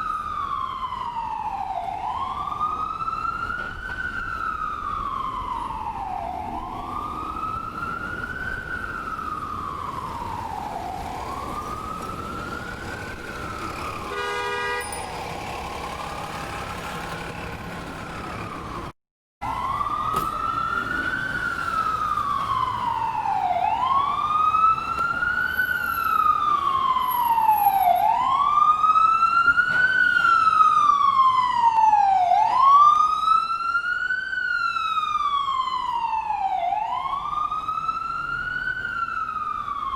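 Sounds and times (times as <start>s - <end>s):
ambulance siren wailing: 0.0s - 39.9s
horn blast: 14.1s - 14.9s.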